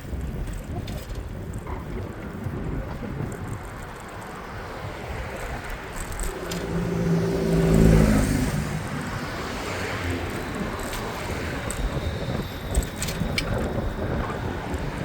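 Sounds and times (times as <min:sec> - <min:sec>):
wind noise on microphone: 0:00.0 - 0:15.0
vehicle engine passing: 0:06.2 - 0:12.3.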